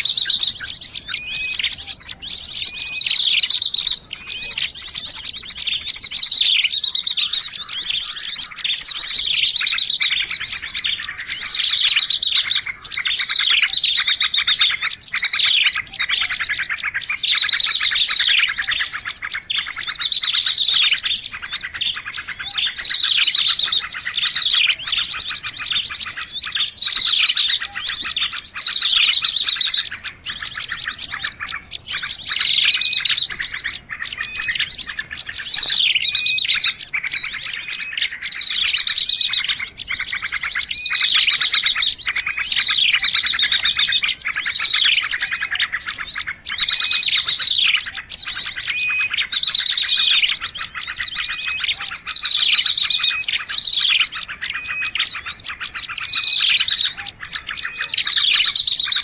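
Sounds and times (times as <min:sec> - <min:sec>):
songbirds chirping and trilling: 0:00.0 - 0:59.0.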